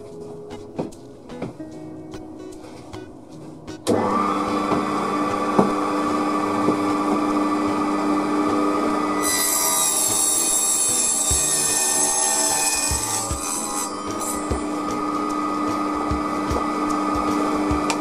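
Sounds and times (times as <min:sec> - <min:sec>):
table saw whining: 0:03.9 - 0:18.0
saw blade cutting wood: 0:09.0 - 0:15.9.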